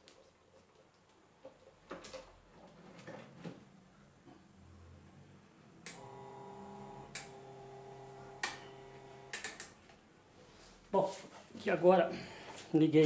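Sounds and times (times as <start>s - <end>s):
fan motor humming: 5.9s - 9.6s.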